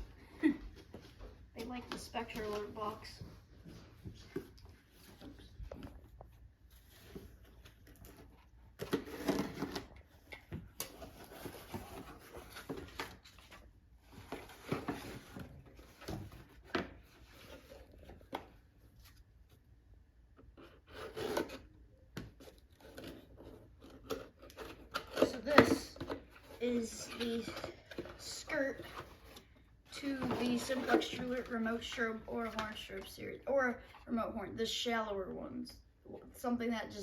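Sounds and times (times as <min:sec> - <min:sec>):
cardboard packaging rustling: 0:01.7 - 0:19.6, 0:22.4 - 0:33.2.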